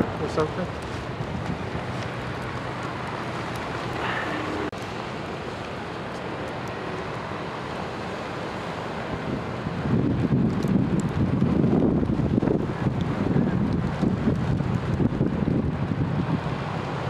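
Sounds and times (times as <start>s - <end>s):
wind on microphone: 0.0s - 4.8s, 9.0s - 17.0s
traffic rushing on snowy road: 0.0s - 17.0s.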